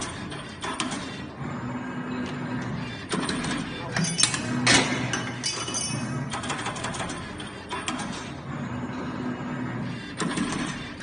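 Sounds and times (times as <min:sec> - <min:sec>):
mechanical clicks and clacks: 0:00.0 - 0:01.2, 0:02.2 - 0:08.3, 0:10.1 - 0:11.0
machine humming: 0:08.3 - 0:11.0.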